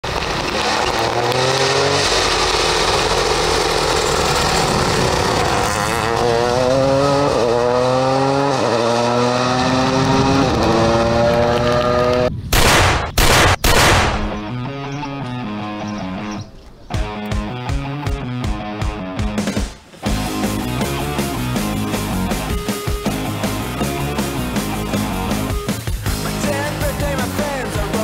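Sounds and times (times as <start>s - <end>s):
rally car engine accelerating: 0.0s - 12.3s.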